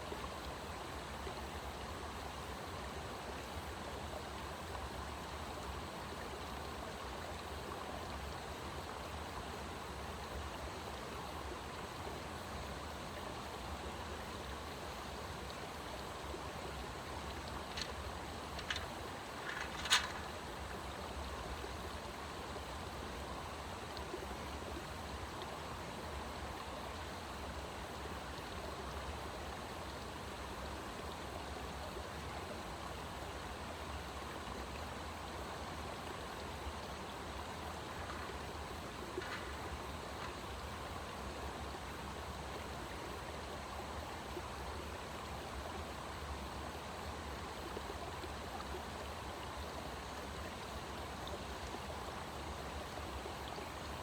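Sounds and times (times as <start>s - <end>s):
flowing water rushing: 0.0s - 54.0s
faint ticks: 15.5s - 21.8s, 36.8s - 41.5s.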